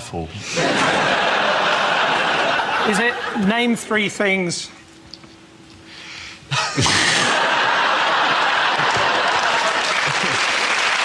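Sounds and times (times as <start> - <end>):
audience laughing: 0.5 - 3.9, 6.5 - 11.0
audience applauding: 7.7 - 11.0.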